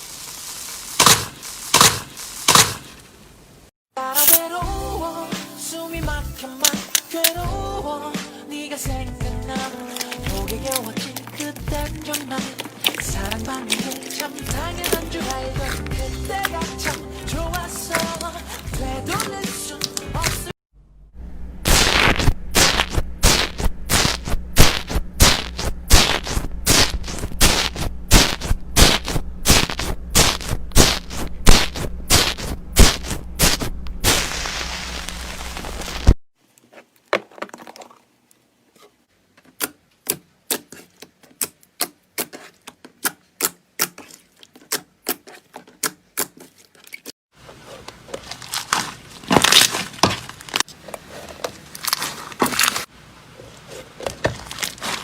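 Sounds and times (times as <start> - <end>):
slime crackling and popping: 0.0 - 2.9, 9.8 - 19.2, 21.7 - 36.2.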